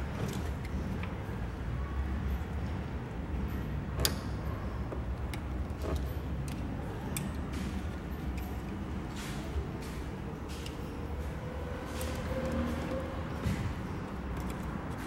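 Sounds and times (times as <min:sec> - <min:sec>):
hand tools and metal clicking: 0:03.8 - 0:15.0.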